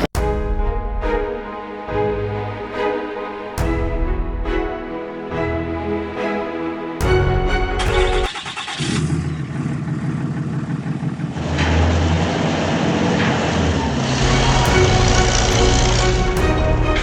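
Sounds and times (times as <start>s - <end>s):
heavy vehicle engine rumbling: 7.8s - 17.0s.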